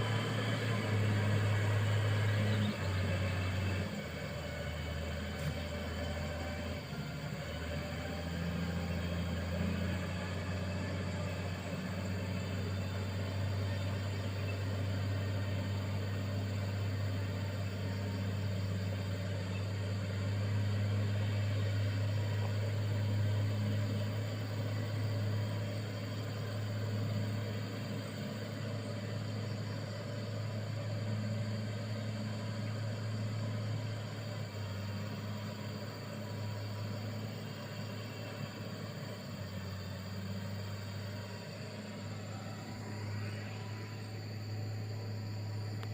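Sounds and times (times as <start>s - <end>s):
diesel engine droning: 0.0s - 45.9s.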